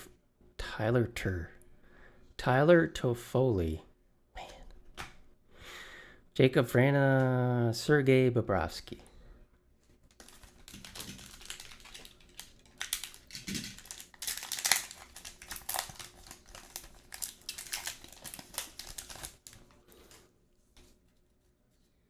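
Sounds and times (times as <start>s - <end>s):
foil wrapper crinkling: 10.1s - 20.2s.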